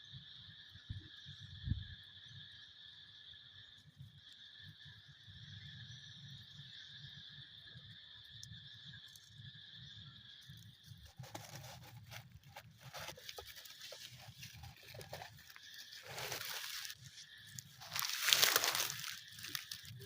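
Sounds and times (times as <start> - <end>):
rustling and crackling: 10.9 - 20.0.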